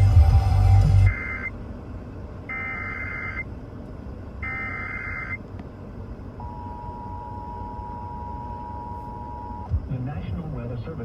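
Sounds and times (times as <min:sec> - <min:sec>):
dual-tone attention signal: 0:01.0 - 0:01.5, 0:06.4 - 0:09.7
screeching digital data tones: 0:01.0 - 0:01.6, 0:02.5 - 0:03.5, 0:04.4 - 0:05.4.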